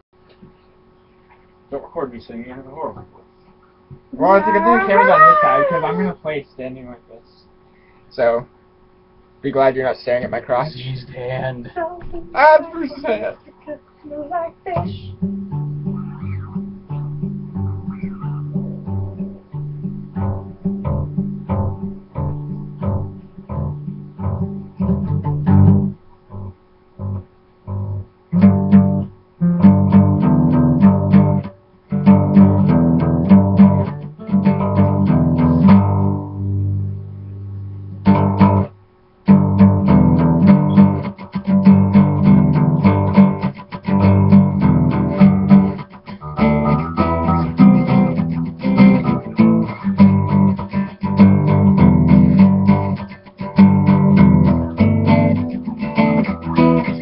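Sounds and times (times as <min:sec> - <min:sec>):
guitar picking: 0:04.0 - 0:06.2, 0:14.7 - 0:57.0.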